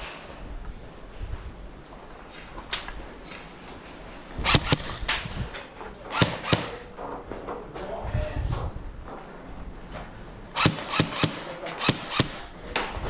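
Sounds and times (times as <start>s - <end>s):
airsoft guns firing: 4.5s - 5.2s, 6.0s - 7.0s, 10.6s - 12.9s.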